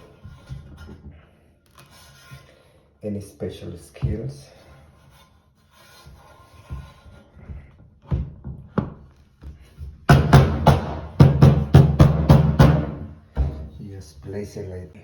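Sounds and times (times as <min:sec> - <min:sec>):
knocks: 0:10.1 - 0:13.8.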